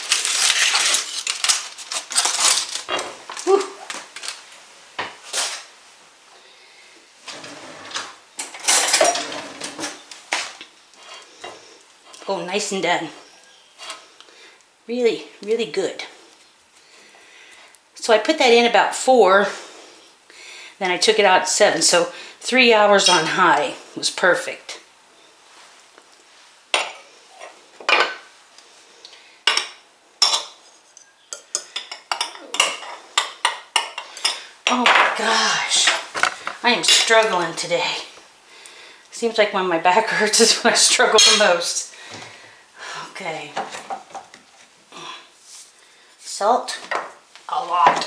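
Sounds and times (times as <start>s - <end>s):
dishes and utensils clattering: 7.3s - 10.0s, 31.4s - 35.2s, 41.2s - 41.6s
dishes and utensils clinking: 7.4s - 10.0s, 23.0s - 23.3s, 41.2s - 41.6s.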